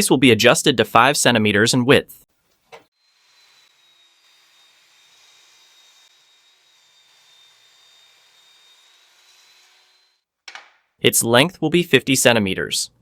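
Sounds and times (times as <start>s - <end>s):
table saw running: 3.0s - 10.2s.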